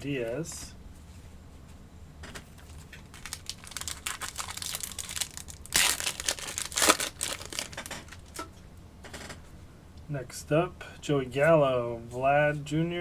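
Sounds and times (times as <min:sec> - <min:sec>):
foil wrapper crinkling: 0:02.5 - 0:08.4
foil wrapper ripping: 0:02.6 - 0:08.4.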